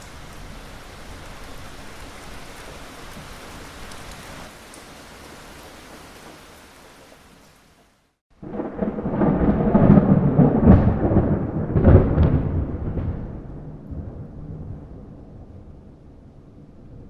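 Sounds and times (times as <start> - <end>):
steady rain: 0.0 - 17.0
rolling thunderclap: 8.4 - 17.0.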